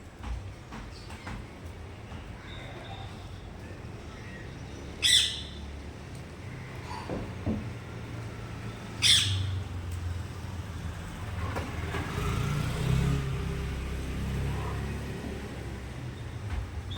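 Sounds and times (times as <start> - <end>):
parakeet squawking: 5.0 - 5.6, 9.0 - 9.6.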